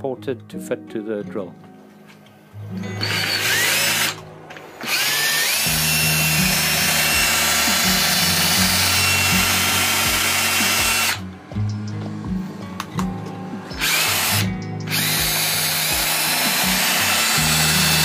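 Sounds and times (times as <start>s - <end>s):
electric drill motor whining: 3.0s - 4.2s, 4.8s - 11.3s, 13.7s - 18.0s.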